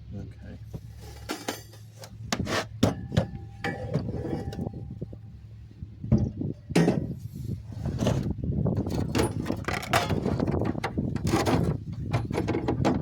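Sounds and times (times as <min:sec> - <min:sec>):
tools and metal parts handled: 0:00.8 - 0:04.9, 0:07.8 - 0:13.0
loud metal clunks: 0:06.2 - 0:07.2.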